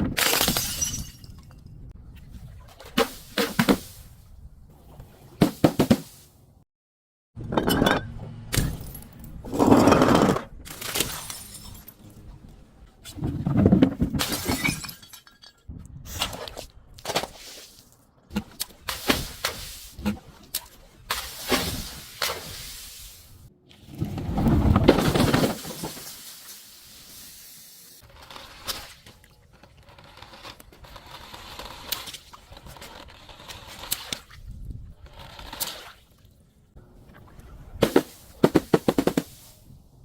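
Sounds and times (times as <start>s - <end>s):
glass bottles smashing: 0.2s - 1.6s, 10.7s - 12.1s, 14.2s - 15.7s.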